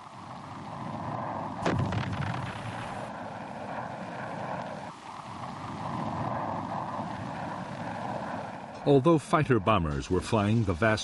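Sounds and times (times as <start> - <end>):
sudden bang: 1.6 - 2.9.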